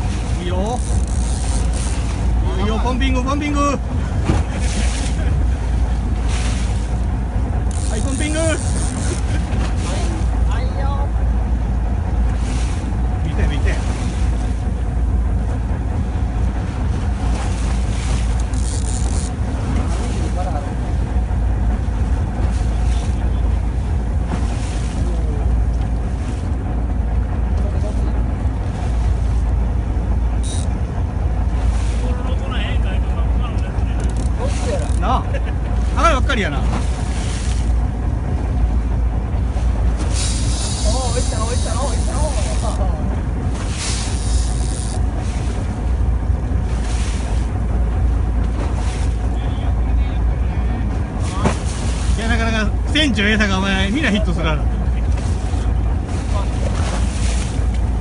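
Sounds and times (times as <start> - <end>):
hiss of wind and water: 0.0 - 0.8, 36.0 - 53.3
boat engine rumbling: 0.0 - 58.0
sea noise: 0.0 - 58.0
wind: 0.0 - 58.0.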